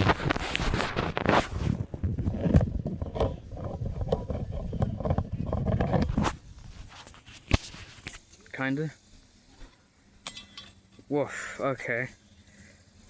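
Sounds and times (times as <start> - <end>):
crunching and rustling on rough ground: 0.0 - 8.8.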